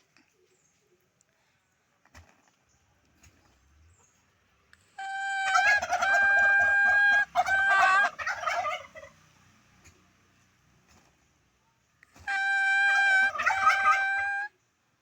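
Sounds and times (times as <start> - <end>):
chicken calling: 5.0 - 9.2, 12.1 - 14.6.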